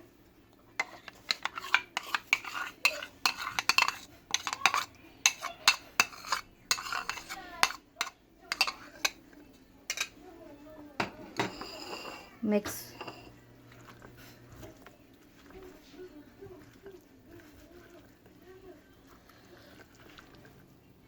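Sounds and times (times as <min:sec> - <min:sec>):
spoon scraping against a bowl: 0:00.8 - 0:09.2, 0:09.9 - 0:10.2, 0:11.4 - 0:14.7.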